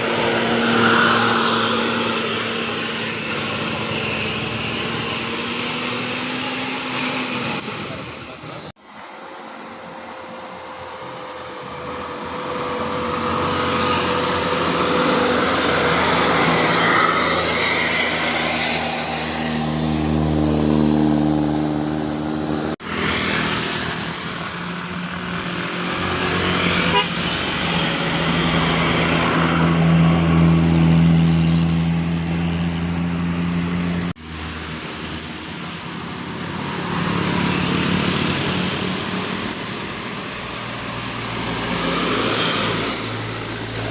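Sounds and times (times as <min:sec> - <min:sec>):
buses driving past: 0:00.0 - 0:43.9.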